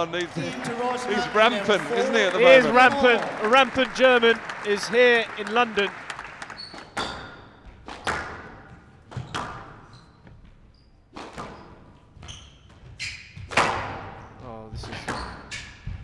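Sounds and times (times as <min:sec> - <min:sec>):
shoes squeaking on court floor: 0:06.4 - 0:07.8, 0:09.1 - 0:13.5.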